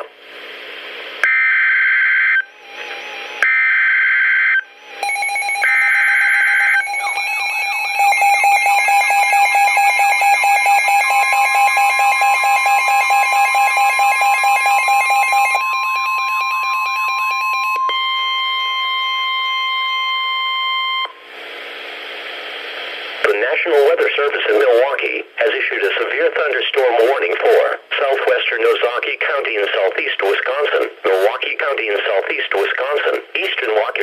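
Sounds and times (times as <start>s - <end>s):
steady warning alarm tone: 1.2s - 21.2s
pulsing alert alarm: 1.3s - 21.0s.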